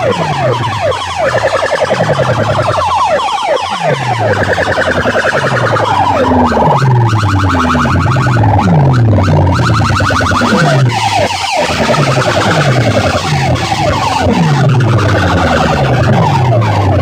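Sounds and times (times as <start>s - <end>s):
electronic siren-like chirps: 0.0s - 17.0s
deep falling bass sweeps: 3.9s - 17.0s.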